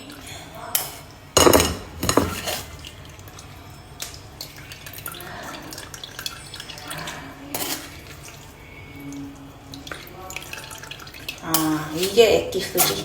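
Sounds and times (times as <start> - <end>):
utensils knocking: 1.4 - 2.7
juice dripping into a container: 2.6 - 11.6.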